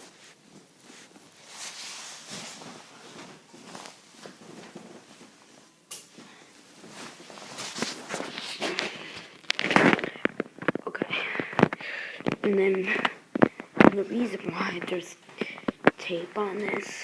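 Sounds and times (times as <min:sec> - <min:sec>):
tablet handling rustling and knocking: 0:07.6 - 0:10.8.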